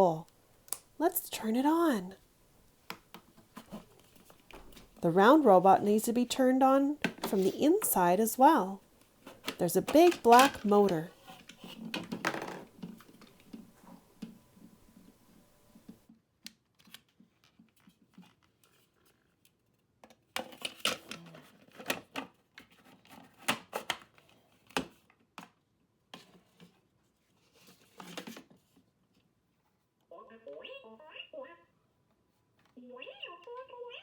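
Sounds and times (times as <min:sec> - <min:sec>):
plastic toy parts clicking: 0:09.4 - 0:12.1.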